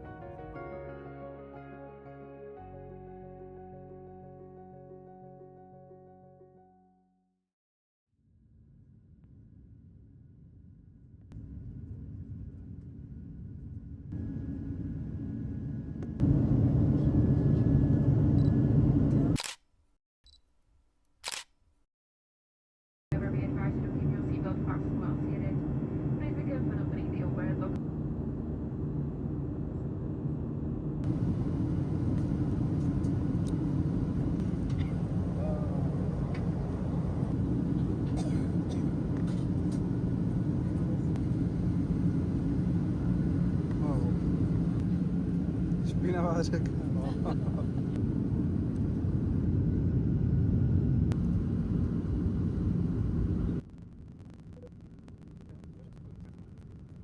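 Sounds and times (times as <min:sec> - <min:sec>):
airliner cabin engine rumble: 0:11.4 - 0:19.4, 0:23.2 - 0:57.0.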